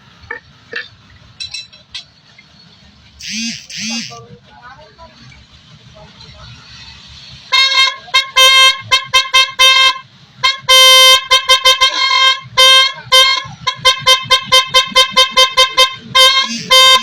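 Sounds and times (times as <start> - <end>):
electric horns honking: 3.2 - 4.2, 7.5 - 17.0.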